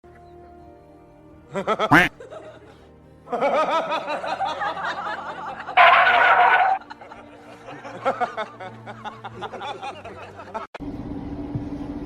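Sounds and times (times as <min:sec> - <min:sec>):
background music: 0:00.0 - 0:10.7
person giggling: 0:01.9 - 0:02.1.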